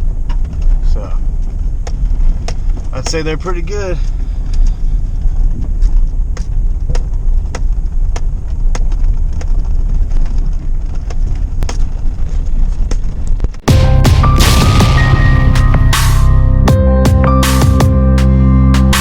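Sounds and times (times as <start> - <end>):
faint engine tick: 0.0 - 13.6
pickup engine rumbling: 0.0 - 19.0.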